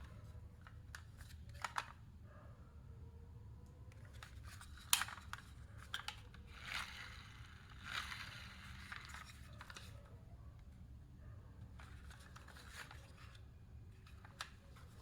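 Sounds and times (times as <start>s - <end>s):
toy car clicks: 4.1s - 10.0s
toy cars scraping: 6.4s - 9.9s.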